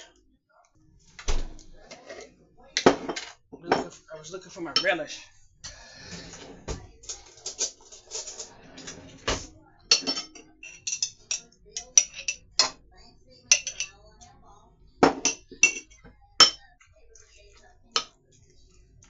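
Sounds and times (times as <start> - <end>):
dishes and utensils clinking: 1.4 - 12.8, 13.4 - 14.0, 15.0 - 18.2.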